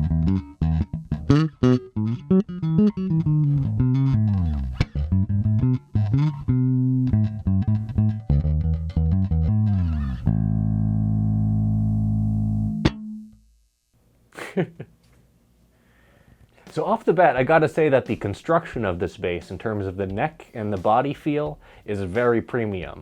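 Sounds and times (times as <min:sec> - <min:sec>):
electric bass plucked notes: 0:00.0 - 0:13.6.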